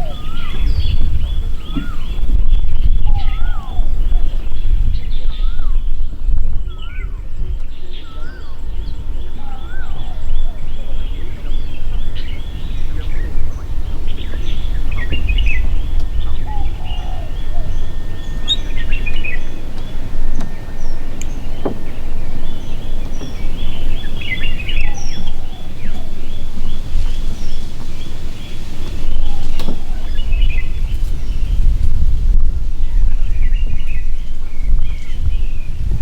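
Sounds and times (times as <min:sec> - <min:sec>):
small birds chirping and whistling: 0:00.0 - 0:36.0
steady low rumble: 0:00.0 - 0:36.0.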